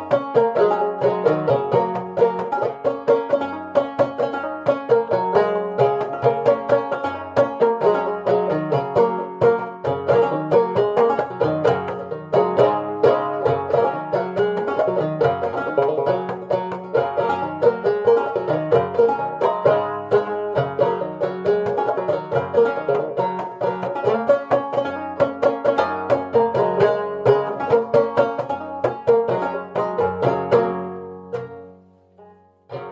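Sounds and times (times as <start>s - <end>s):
banjo plucked notes: 0.0s - 32.9s.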